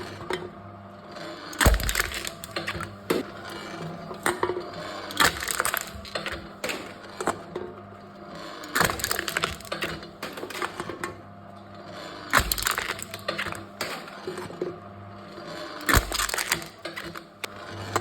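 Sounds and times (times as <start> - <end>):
cans crushed by machine: 1.2 - 7.5, 8.3 - 11.2, 12.0 - 18.0
crumpling metal crackling: 1.6 - 2.7, 5.1 - 6.4, 8.7 - 9.9, 12.4 - 13.4, 15.8 - 17.2.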